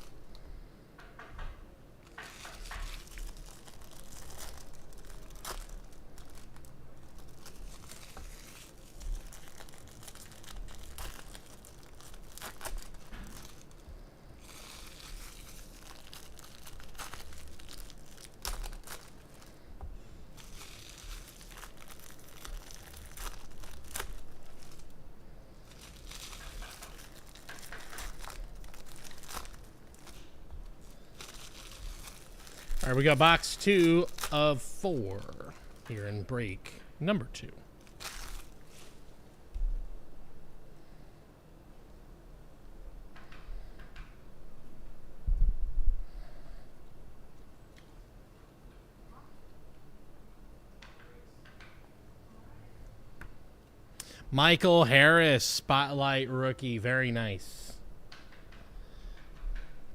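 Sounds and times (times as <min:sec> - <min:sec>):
card wrappers crinkling and tearing: 0:02.1 - 0:19.6, 0:20.3 - 0:36.6, 0:37.8 - 0:39.0.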